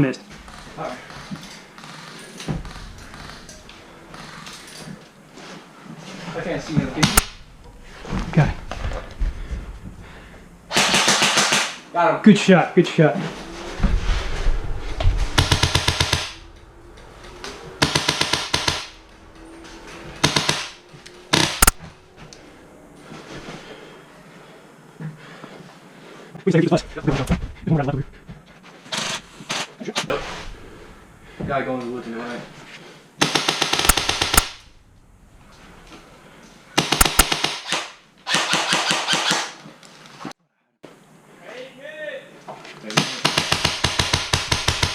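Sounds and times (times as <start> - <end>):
airsoft guns firing bursts: 10.7 - 11.8, 17.8 - 19.0, 20.2 - 21.8, 33.2 - 34.6, 36.8 - 39.6, 42.9 - 44.9.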